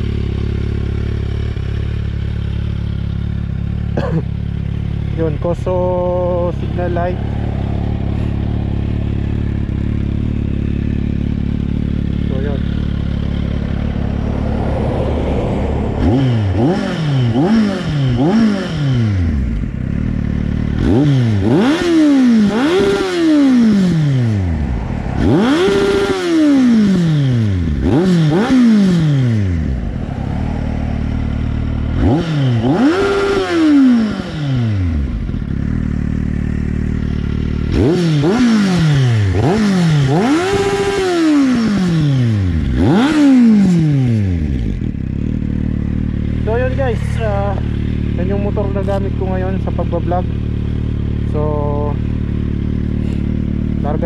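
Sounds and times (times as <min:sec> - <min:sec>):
motorcycle engine idling and revving: 0:00.0 - 0:54.0.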